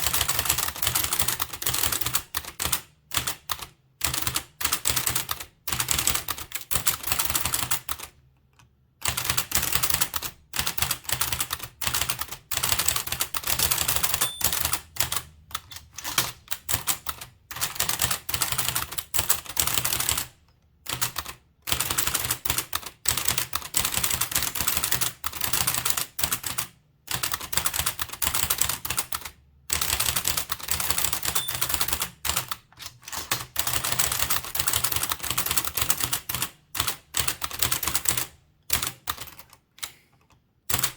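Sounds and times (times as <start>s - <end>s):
typewriter clatter: 9.1s - 20.2s, 20.9s - 39.5s.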